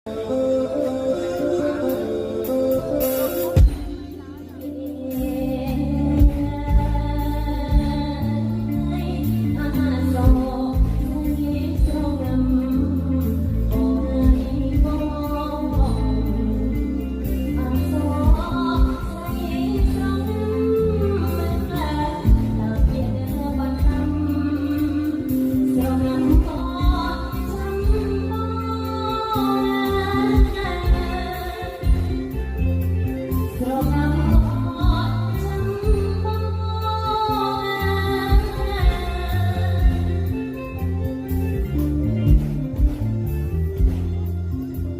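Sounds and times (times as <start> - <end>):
bass: 0.1 - 44.9
song with singing over beat: 0.1 - 44.9
steady drum beat: 38.2 - 44.9.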